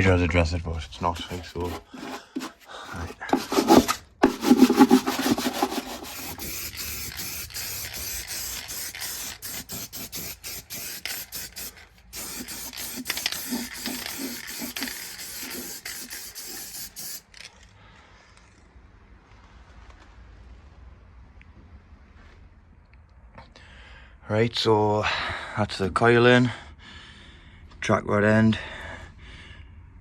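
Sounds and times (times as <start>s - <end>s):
rough scraping: 1.0s - 17.5s
aerosol can spraying: 1.2s - 17.4s.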